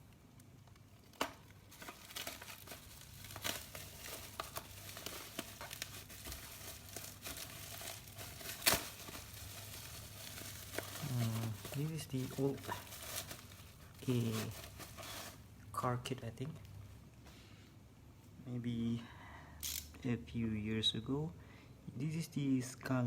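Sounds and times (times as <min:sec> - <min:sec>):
plastic packaging crinkling: 0:00.0 - 0:15.5.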